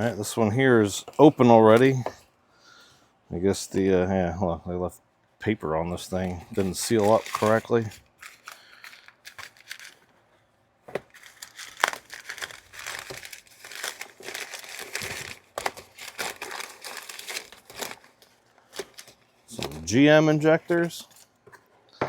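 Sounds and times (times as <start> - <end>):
packing paper crumpling: 5.9 - 10.1, 11.0 - 21.4.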